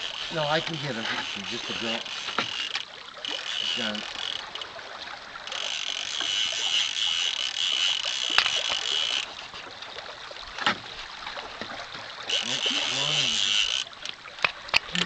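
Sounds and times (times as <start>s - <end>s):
fishing reel ratchet buzzing: 0.0s - 4.7s, 5.4s - 9.6s, 12.3s - 14.2s.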